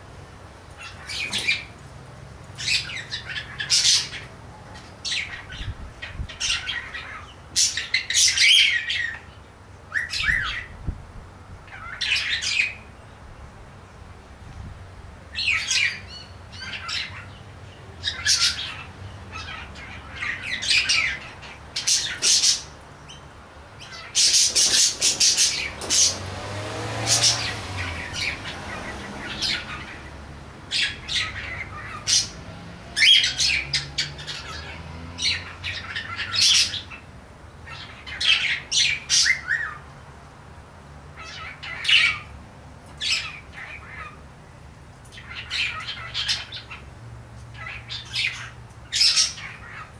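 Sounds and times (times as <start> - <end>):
cockatiel chirping and squawking: 18.0 - 22.7, 30.7 - 32.4, 33.0 - 37.0, 37.7 - 39.8, 41.2 - 42.3, 43.0 - 44.2, 45.1 - 46.8, 47.6 - 49.9.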